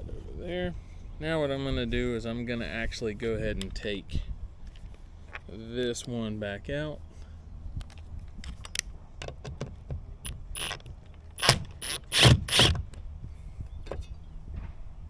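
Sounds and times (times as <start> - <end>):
screw rasping scrapes: 10.2 - 12.9.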